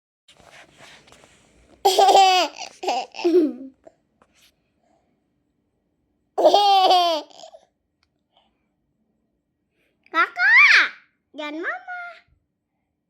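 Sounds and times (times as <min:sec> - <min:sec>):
baby giggling: 0:01.9 - 0:03.8, 0:06.4 - 0:07.6.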